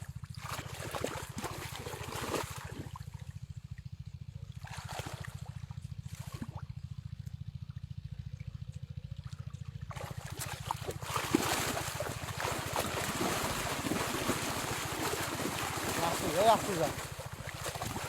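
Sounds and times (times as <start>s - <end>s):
water splashing and rushing: 10.3s - 18.0s.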